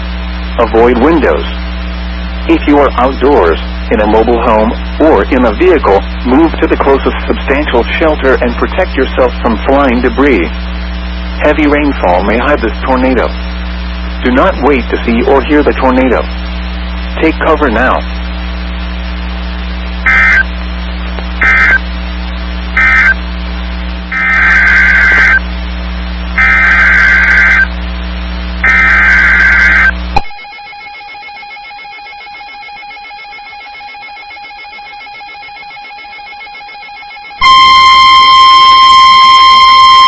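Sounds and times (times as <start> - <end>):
buzzy digital data bursts: 0.0 - 30.1, 37.4 - 40.0
loud steady warning alarm tone: 0.0 - 40.0.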